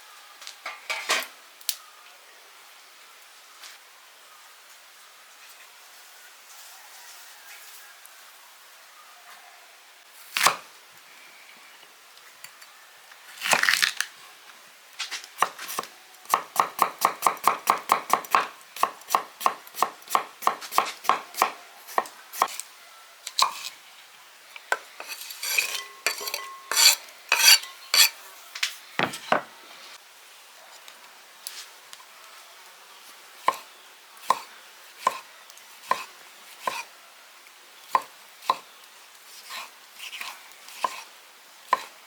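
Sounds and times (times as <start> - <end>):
knife chopping on cutting board: 15.4 - 22.5, 34.3 - 35.2, 35.9 - 36.9.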